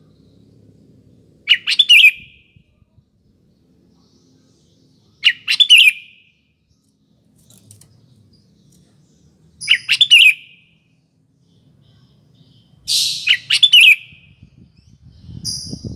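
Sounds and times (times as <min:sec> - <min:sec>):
bulbul whistled song: 0:01.5 - 0:02.5, 0:05.2 - 0:06.2, 0:09.6 - 0:10.8, 0:12.9 - 0:14.4.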